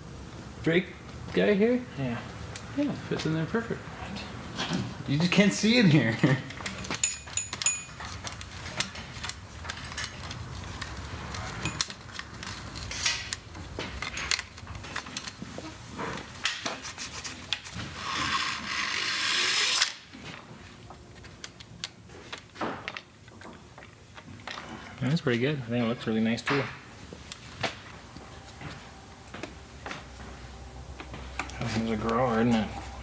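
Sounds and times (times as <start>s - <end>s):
metal parts clicking and rattling: 6.2s - 15.5s.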